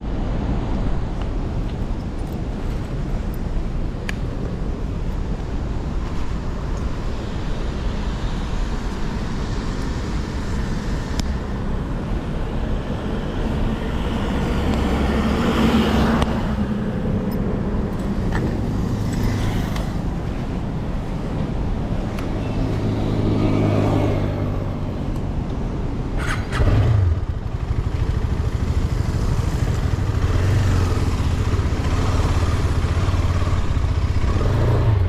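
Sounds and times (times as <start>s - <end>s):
road and wind rush: 0.0s - 35.0s
motorcycle engine running: 26.6s - 35.0s.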